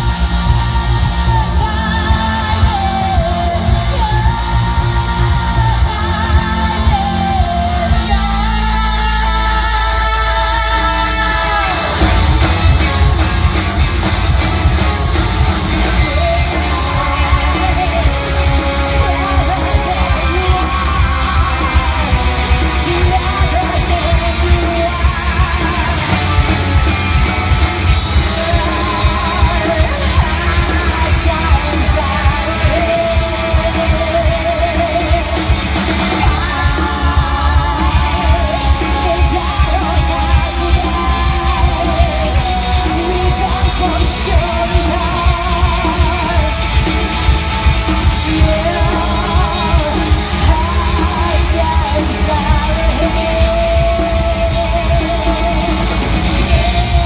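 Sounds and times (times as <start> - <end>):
drums: 0.0 - 57.0
electric guitar: 0.0 - 57.0
person singing: 0.0 - 57.0.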